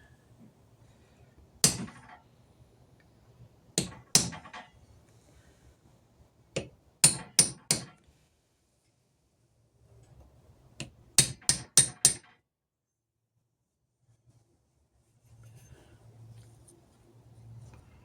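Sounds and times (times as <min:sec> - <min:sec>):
hammer striking a metal punch: 0:01.6 - 0:02.1, 0:03.8 - 0:04.5, 0:07.0 - 0:07.9, 0:11.2 - 0:12.3.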